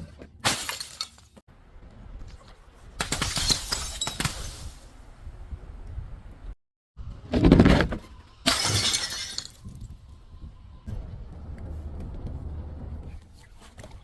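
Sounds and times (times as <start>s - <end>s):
glass bottle shattering: 0.4s - 1.3s, 3.1s - 4.8s, 8.5s - 9.7s.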